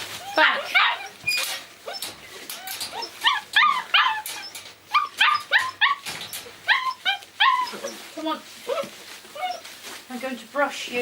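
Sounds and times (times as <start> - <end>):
puppy yapping: 0.2 - 8.0.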